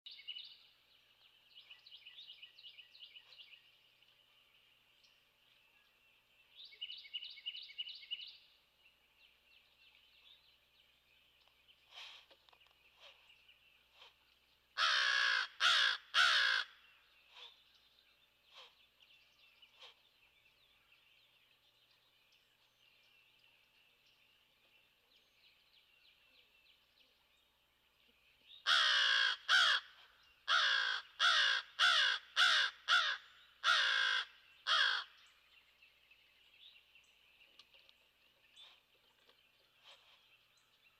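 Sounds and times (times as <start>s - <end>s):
crow cawing: 14.8s - 16.8s, 28.6s - 29.9s, 30.5s - 35.2s.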